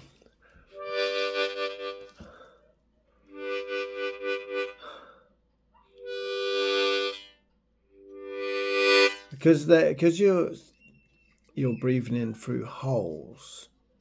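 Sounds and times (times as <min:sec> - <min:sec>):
breath noise: 0:00.0 - 0:02.8, 0:04.6 - 0:05.4
harmonica chords: 0:00.7 - 0:02.5, 0:03.2 - 0:05.2, 0:06.0 - 0:10.8.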